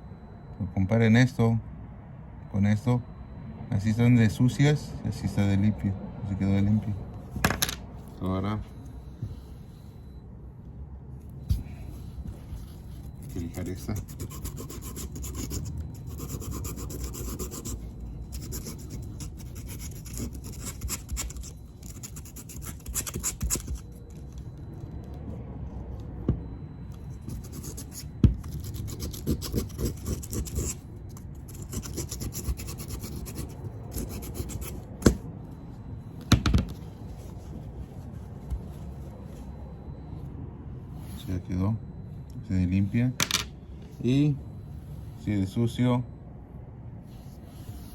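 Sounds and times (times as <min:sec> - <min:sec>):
brake pad sanded on sandpaper: 0:12.5 - 0:24.0, 0:31.5 - 0:35.0.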